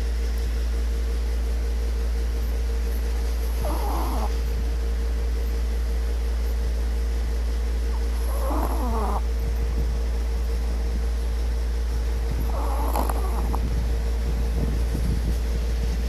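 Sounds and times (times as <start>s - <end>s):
steady low hum: 0.0s - 16.0s
pet snoring: 3.3s - 4.6s, 7.9s - 9.5s, 12.2s - 15.2s.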